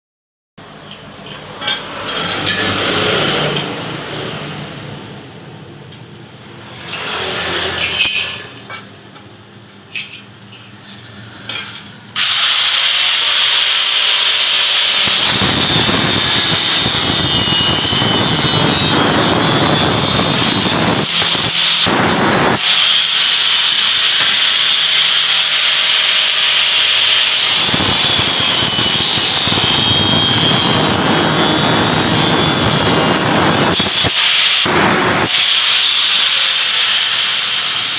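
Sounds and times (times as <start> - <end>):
power tool grinding whine: 12.2 - 37.9.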